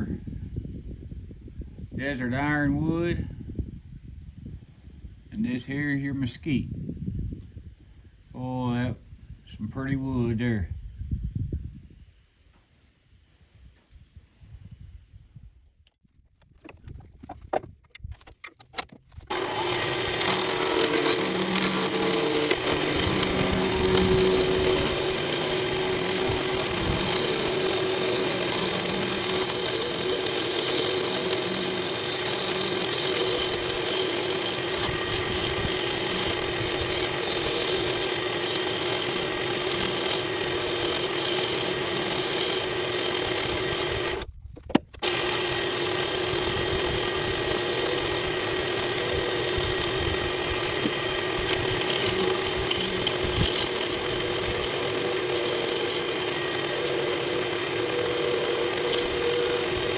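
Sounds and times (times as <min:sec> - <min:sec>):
tool scraping spinning wood: 0:16.1 - 0:59.9
wood lathe motor hum: 0:16.6 - 0:59.9.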